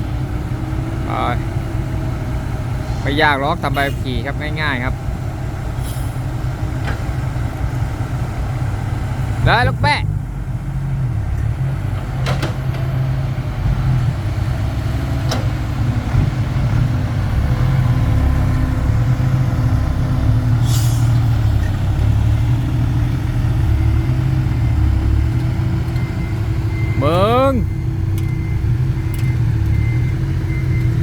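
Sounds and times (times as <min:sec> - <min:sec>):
diesel machinery running: 0:00.0 - 0:31.0
brief hiss: 0:02.8 - 0:04.2, 0:20.6 - 0:21.3.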